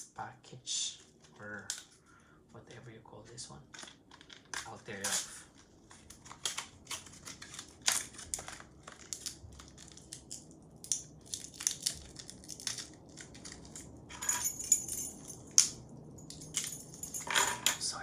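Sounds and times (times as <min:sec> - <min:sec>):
plastic packaging crackling: 0:03.7 - 0:14.1.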